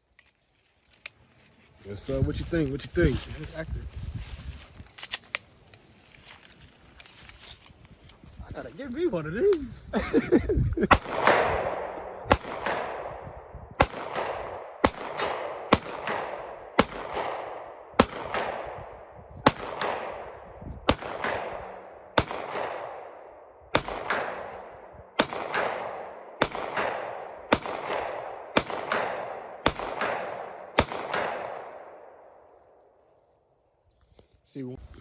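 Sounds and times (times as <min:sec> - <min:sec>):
gunshots with echo: 0:10.9 - 0:32.2.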